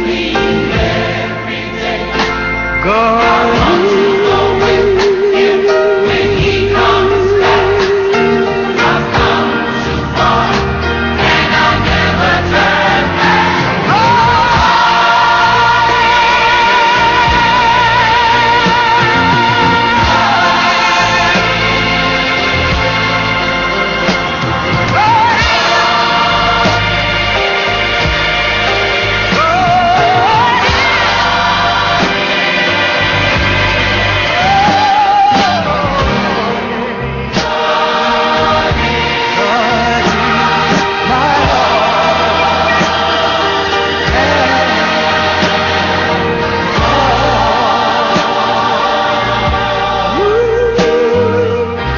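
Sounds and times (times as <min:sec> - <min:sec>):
gospel choir singing: 0:00.0 - 0:51.9
instrumental backing: 0:00.0 - 0:51.9
person singing with vibrato: 0:02.8 - 0:09.1.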